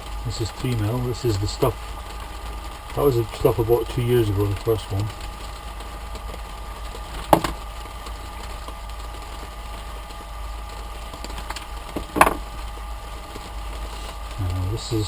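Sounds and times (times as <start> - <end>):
sharp knocks: 7.3 - 7.6, 12.0 - 12.4.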